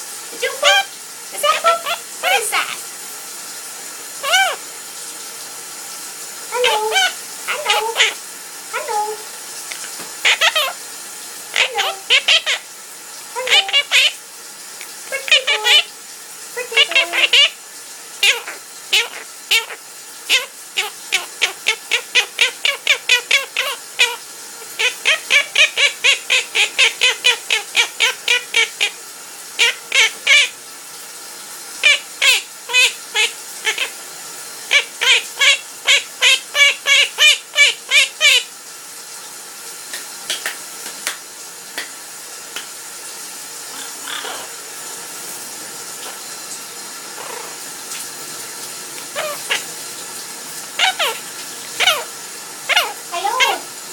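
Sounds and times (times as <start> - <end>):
parrot singing rapid notes: 0.4 - 2.8, 4.2 - 4.6, 6.5 - 9.2, 10.2 - 10.8, 11.5 - 12.7, 13.4 - 14.2, 14.8 - 15.9, 16.6 - 17.6, 18.2 - 29.0, 29.6 - 30.6, 31.8 - 34.0, 34.7 - 38.5, 43.7 - 44.6, 47.2 - 47.6, 49.0 - 49.7, 50.8 - 53.7
soft parrot calls: 0.4 - 2.8, 4.2 - 4.6, 6.5 - 10.9, 11.5 - 12.7, 13.3 - 14.2, 14.8 - 15.9, 16.5 - 17.6, 18.2 - 29.0, 29.6 - 30.6, 31.8 - 34.0, 34.7 - 38.5, 43.6 - 44.6, 47.1 - 48.0, 49.0 - 49.8, 50.7 - 53.7.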